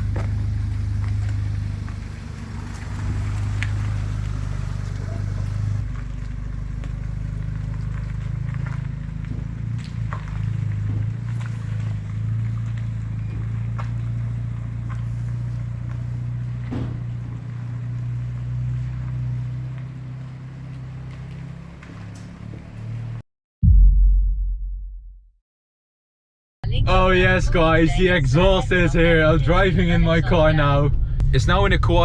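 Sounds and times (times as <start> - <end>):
car engine droning: 0.0 - 23.2.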